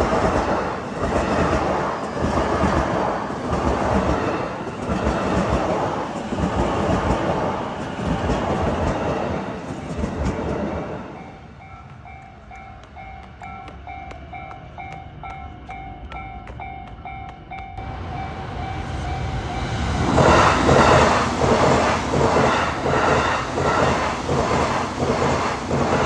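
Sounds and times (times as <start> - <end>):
train wheels clattering on rails: 0.0 - 26.0
level-crossing warning bell: 11.1 - 26.0.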